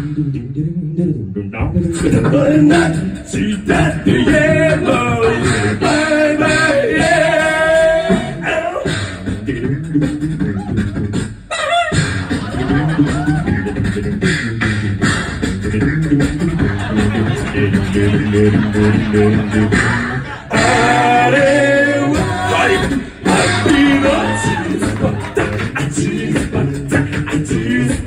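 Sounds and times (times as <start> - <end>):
beatboxed drum beat: 0.0 - 28.0
group singing in harmony: 1.9 - 9.7, 16.4 - 28.0.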